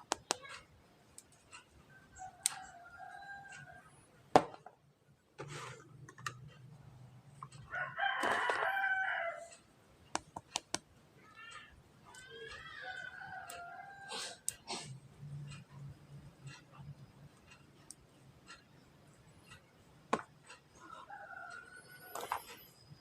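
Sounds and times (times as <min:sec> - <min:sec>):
rooster crowing: 0:02.2 - 0:03.9, 0:07.7 - 0:09.5, 0:12.2 - 0:14.5, 0:20.8 - 0:22.3.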